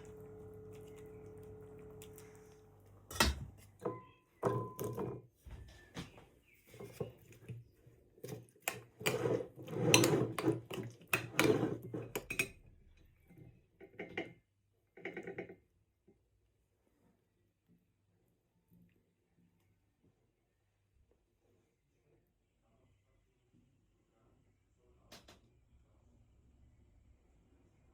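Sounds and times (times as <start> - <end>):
cookware knocks and clinks: 3.1 - 5.2
utensils clattering and scraping: 8.2 - 12.4.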